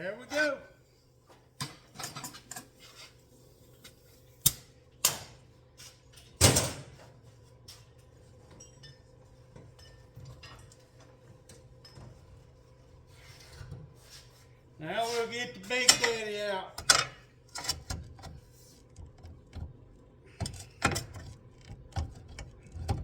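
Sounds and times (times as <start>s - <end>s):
metal tools knocking and clanking: 15.8s - 16.2s, 16.8s - 18.0s.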